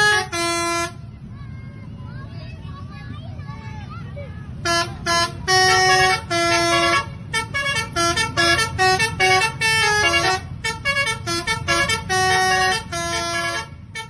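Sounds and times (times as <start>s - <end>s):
bus melody horn playing a tune: 0.0s - 1.1s, 4.6s - 14.0s
low engine rumble: 0.0s - 14.0s.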